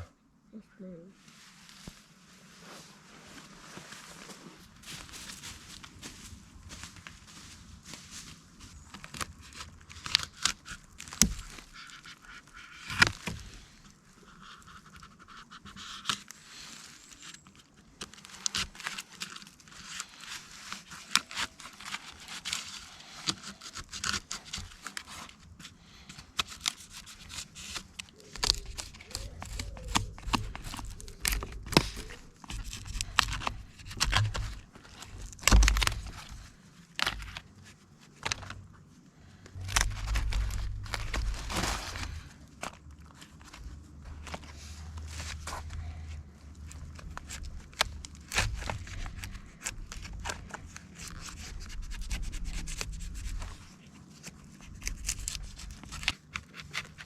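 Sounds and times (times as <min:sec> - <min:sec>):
bark tearing and crackling: 0:08.5 - 0:57.0
low thuds: 0:39.6 - 0:42.4.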